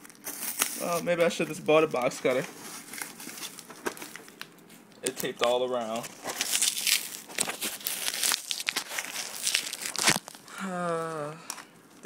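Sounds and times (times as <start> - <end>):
packing tape ripping: 0.0 - 1.2, 1.8 - 10.4
cardboard box being torn open: 6.0 - 10.4.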